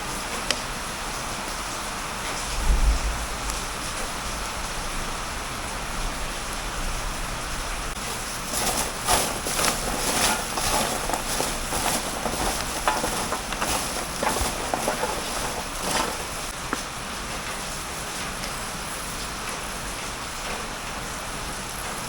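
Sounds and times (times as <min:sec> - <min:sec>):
frying crackling and popping: 0:07.8 - 0:22.0.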